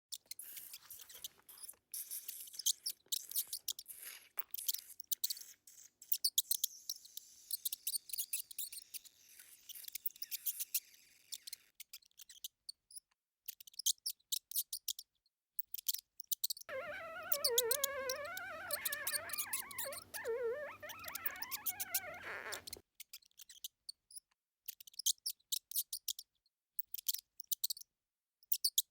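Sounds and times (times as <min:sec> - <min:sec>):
mice squeaking: 0:00.1 - 0:12.5, 0:16.7 - 0:22.8
wavering squeal: 0:16.7 - 0:22.8.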